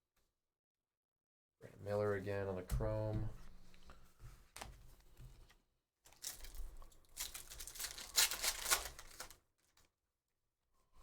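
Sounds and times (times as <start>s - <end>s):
foil wrapper tearing and crinkling: 6.1s - 9.4s.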